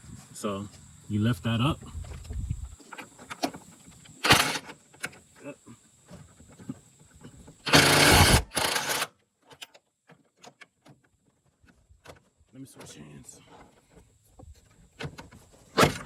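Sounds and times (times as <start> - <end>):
ratchet tool rasping: 7.6 - 9.1.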